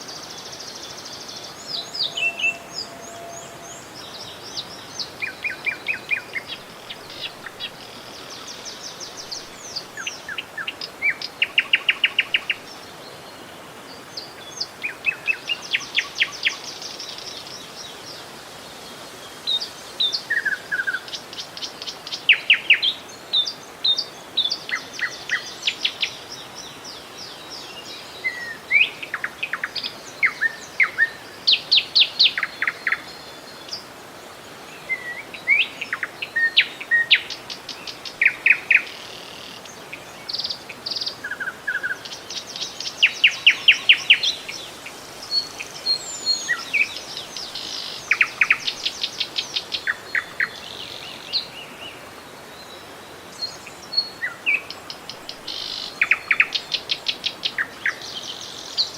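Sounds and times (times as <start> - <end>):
songbirds chirping and trilling: 0.0 - 18.2
river water rushing: 0.0 - 58.9.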